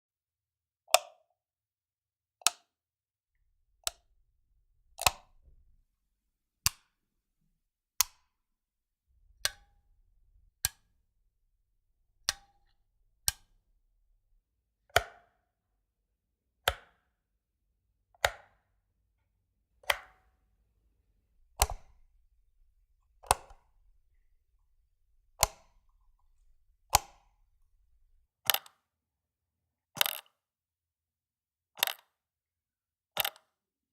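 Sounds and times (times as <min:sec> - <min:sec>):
light switch clicking: 0:13.2 - 0:13.5, 0:21.6 - 0:22.0.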